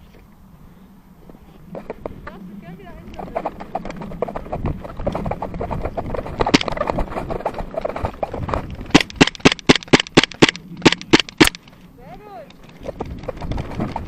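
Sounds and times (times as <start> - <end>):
airsoft gun shots: 8.9 - 11.7.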